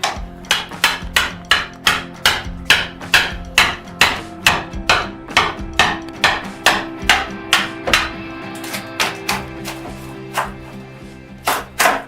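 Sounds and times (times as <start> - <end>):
background music with plucked beat: 0.0 - 12.0.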